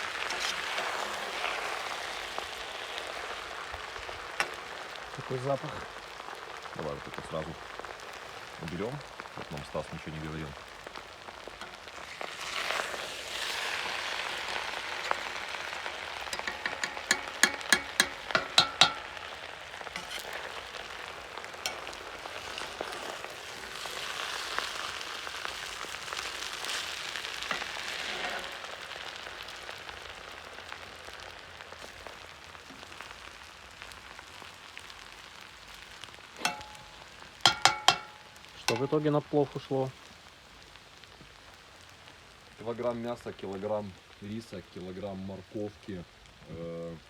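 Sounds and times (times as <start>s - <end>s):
food sizzling in a pot: 0.0s - 47.0s
metal utensil scraping a pot: 0.1s - 1.7s, 14.9s - 19.3s, 19.9s - 20.8s, 21.6s - 23.2s, 27.5s - 28.6s, 36.4s - 39.0s.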